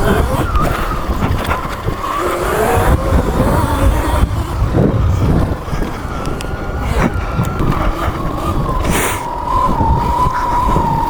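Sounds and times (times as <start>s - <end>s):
electric motor whine: 0.0s - 11.0s
wind rumble on microphone: 0.0s - 11.0s.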